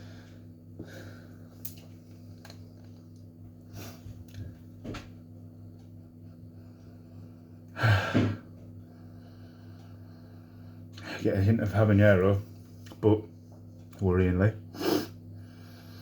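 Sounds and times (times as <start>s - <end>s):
man sniffing: 14.8s - 15.2s.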